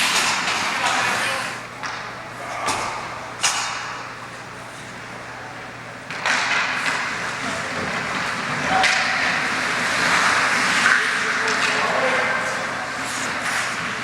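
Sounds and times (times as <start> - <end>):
hockey sticks and puck clacking: 0.0 - 1.1, 1.8 - 2.0, 6.1 - 12.6, 13.3 - 14.0
steady low hum: 0.0 - 14.0
skate blades scraping ice: 6.8 - 14.0.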